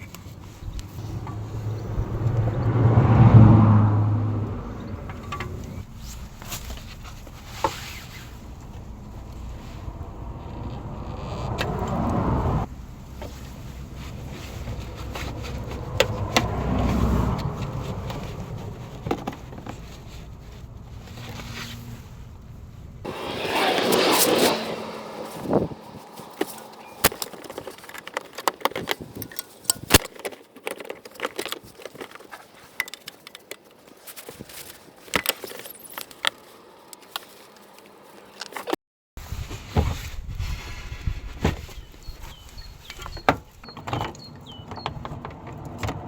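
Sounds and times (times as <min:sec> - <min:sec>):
low vehicle rumble: 0:00.2 - 0:28.1.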